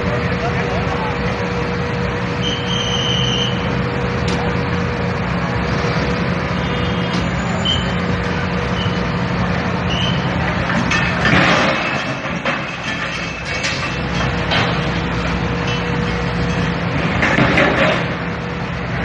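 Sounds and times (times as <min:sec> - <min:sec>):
heavy vehicle engine running: 0:00.0 - 0:19.0
short high squeaks: 0:02.4 - 0:03.6, 0:06.7 - 0:08.0.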